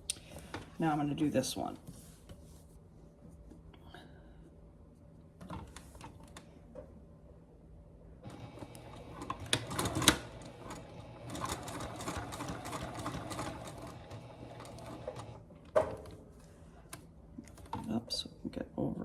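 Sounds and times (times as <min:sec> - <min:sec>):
sewing machine stitching: 0:08.2 - 0:15.4.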